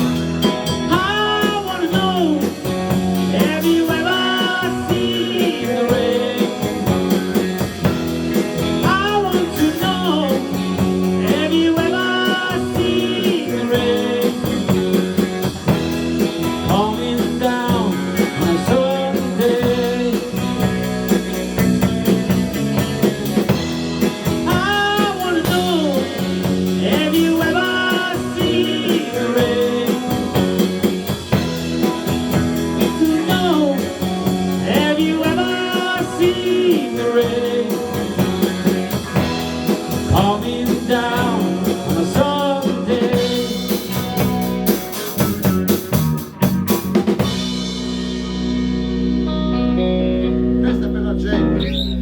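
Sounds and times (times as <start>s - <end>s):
rock band playing: 0.0s - 52.0s
person singing: 0.4s - 7.6s, 8.3s - 15.5s, 16.4s - 21.5s, 24.2s - 31.1s, 32.6s - 44.4s.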